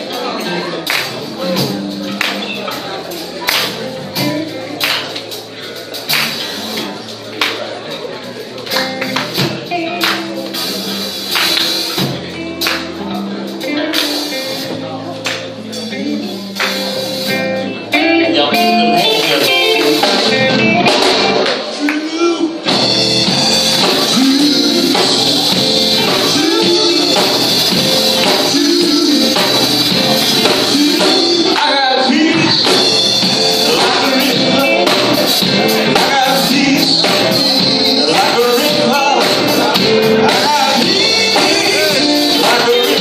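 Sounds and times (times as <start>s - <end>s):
band playing: 0.0s - 43.0s
person singing: 9.4s - 43.0s.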